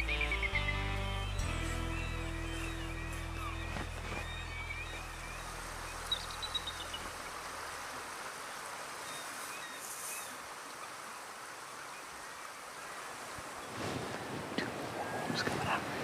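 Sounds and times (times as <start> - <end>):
background music: 0.0 - 6.0
high bird notes: 0.0 - 7.2
stream rapids rushing: 1.4 - 16.0.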